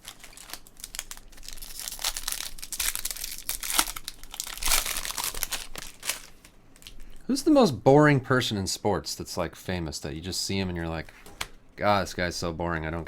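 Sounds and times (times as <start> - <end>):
card pack wrapper tearing: 0.0 - 7.0.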